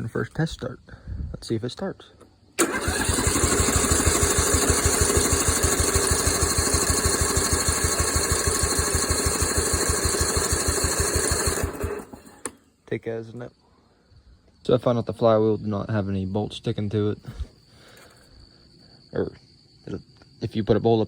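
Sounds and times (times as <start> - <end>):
electric starter cranking engine: 2.6 - 12.6.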